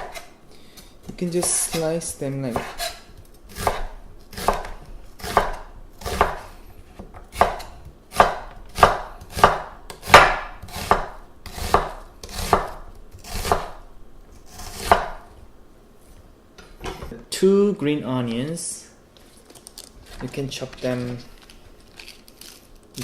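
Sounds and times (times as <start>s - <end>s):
knife slicing onion on board: 0.0s - 15.4s.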